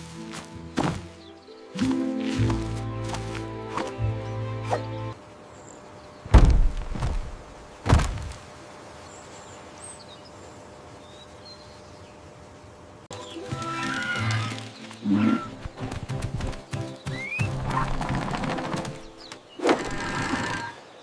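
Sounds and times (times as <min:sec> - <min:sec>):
outdoor ambience: 0:00.0 - 0:21.0
heavy thuds with rumble: 0:06.3 - 0:08.3.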